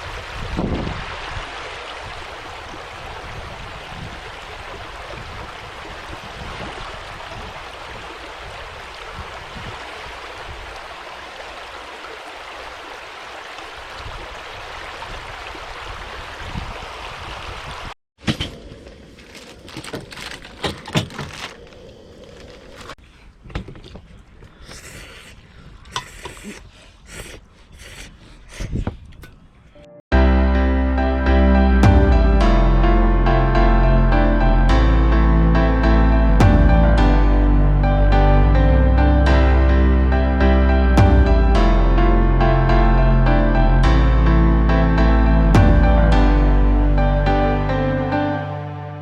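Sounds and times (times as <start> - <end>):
water rushing: 0.0 - 18.0.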